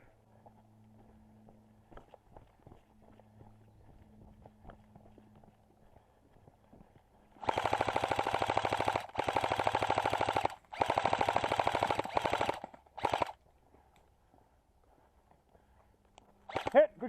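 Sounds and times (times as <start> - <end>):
airsoft gun firing full auto: 7.4 - 13.4, 16.5 - 16.9.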